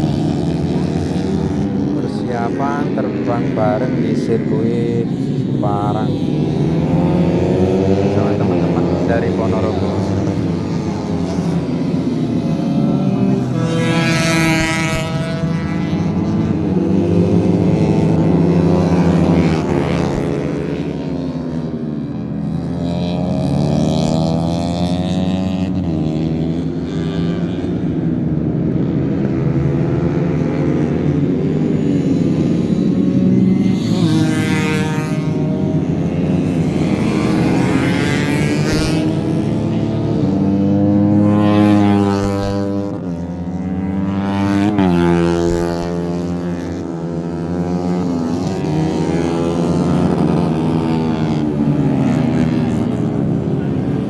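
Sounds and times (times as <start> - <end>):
motors running loud: 0.0 - 54.0.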